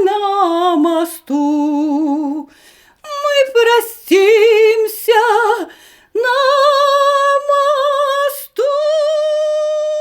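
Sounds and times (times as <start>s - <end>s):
woman singing unaccompanied: 0.0s - 10.0s
quick breaths: 2.5s - 3.0s, 5.7s - 6.1s.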